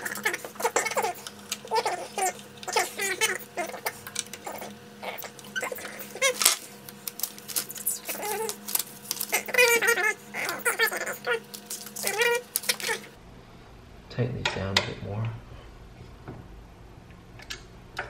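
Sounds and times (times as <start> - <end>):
small animal squeaking and chirping: 0.0 - 6.6, 7.5 - 13.2
steady low hum: 0.0 - 18.0.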